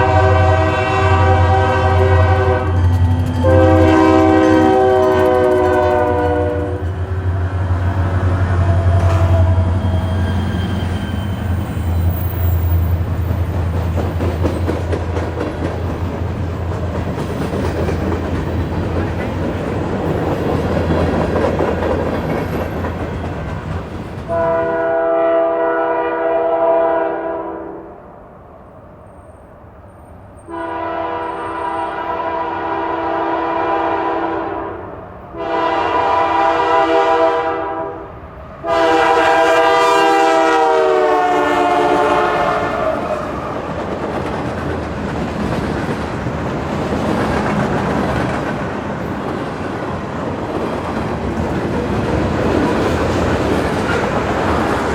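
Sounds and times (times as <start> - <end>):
locomotive air horn blasts: 0.0 - 7.0, 24.3 - 27.9, 30.5 - 43.1
freight train rumble and clickety-clack: 0.0 - 27.1, 28.8 - 54.9.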